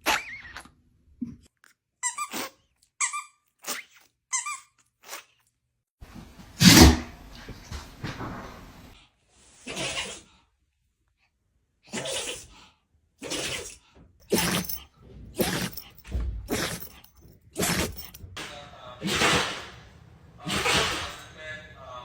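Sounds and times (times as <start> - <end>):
dogs sneezing: 6.5 - 7.5, 9.6 - 10.2, 11.9 - 12.6, 13.2 - 18.3, 19.0 - 19.7, 20.4 - 21.2.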